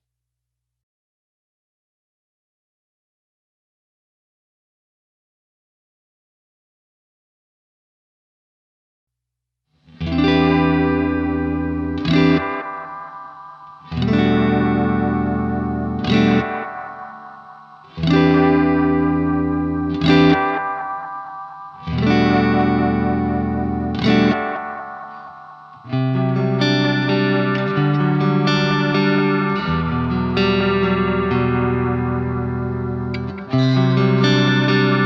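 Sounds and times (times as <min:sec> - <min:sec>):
electric guitar chords: 0:09.9 - 0:35.0.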